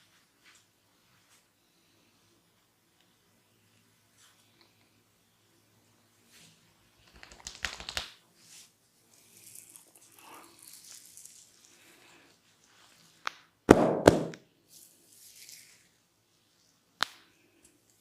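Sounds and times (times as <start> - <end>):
loud slap-like strikes: 13.7 - 14.4.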